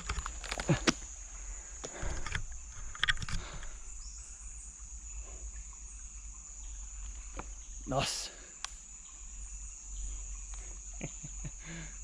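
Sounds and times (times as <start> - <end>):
knocks and scuffs on tree trunk: 0.0 - 1.1
high-pitched insect drone: 0.0 - 12.0.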